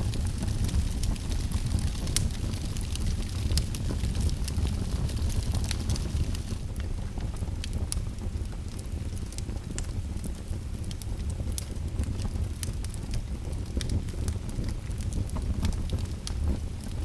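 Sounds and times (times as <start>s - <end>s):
fire crackling: 0.0s - 17.0s.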